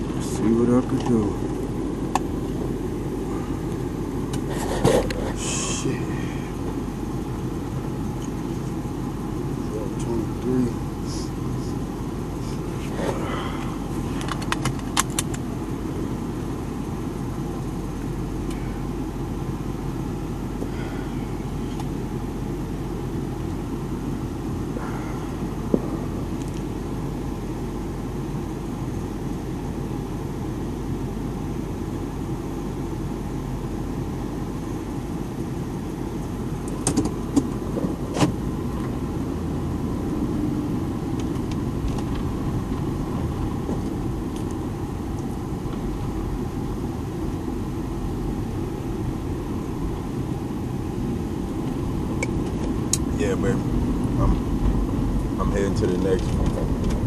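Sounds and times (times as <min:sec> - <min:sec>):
vehicle engine running: 0:00.0 - 0:57.0.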